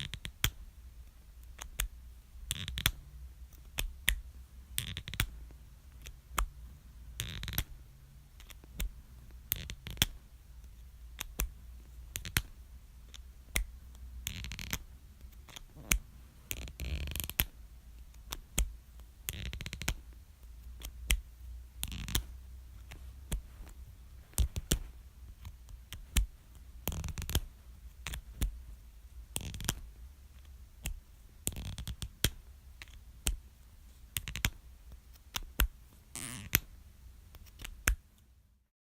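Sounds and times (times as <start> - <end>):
marker cap clicking: 2.5 - 3.0, 7.2 - 7.7, 12.1 - 12.5, 19.3 - 20.0.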